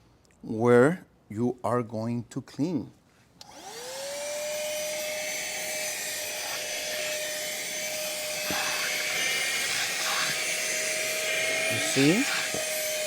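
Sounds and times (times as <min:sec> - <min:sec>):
handheld vacuum cleaner running: 0:03.4 - 0:13.0.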